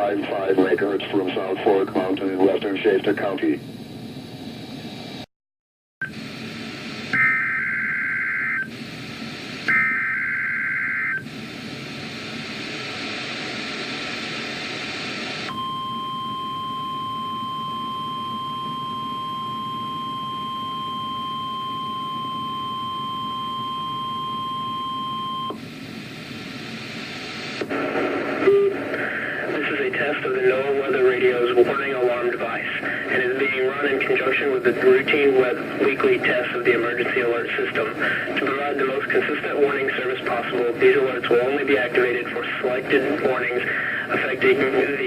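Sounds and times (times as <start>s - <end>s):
radio static hiss: 0.0s - 5.3s, 6.0s - 7.4s, 8.5s - 10.0s, 11.1s - 15.6s, 25.4s - 45.0s
steady warning alarm tone: 6.9s - 11.7s, 15.4s - 25.6s.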